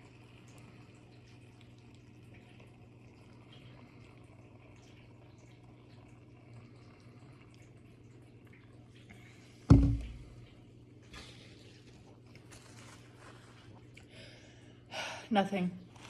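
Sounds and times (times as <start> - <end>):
sharp knock with ringing: 9.7 - 10.3.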